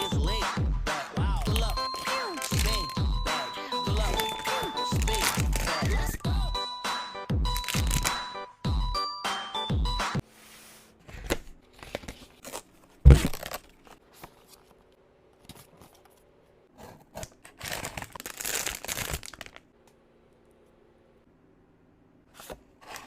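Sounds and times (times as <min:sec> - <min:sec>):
packaging crinkling and tearing: 0:01.4 - 0:03.0, 0:03.9 - 0:06.0, 0:07.6 - 0:08.2, 0:11.7 - 0:14.7, 0:17.2 - 0:19.7.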